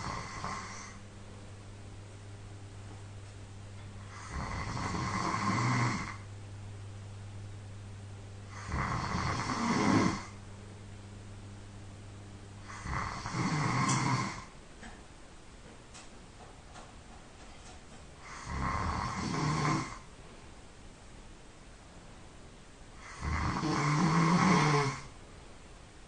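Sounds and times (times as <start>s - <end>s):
person snoring: 0.0s - 1.0s, 4.0s - 6.2s, 8.5s - 10.4s, 12.6s - 14.5s, 18.2s - 20.1s, 23.0s - 25.1s
low steady hum: 0.0s - 26.0s.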